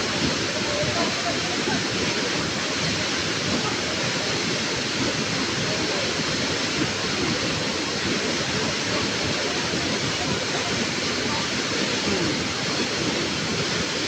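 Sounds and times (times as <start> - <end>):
rushing water: 0.0 - 14.0.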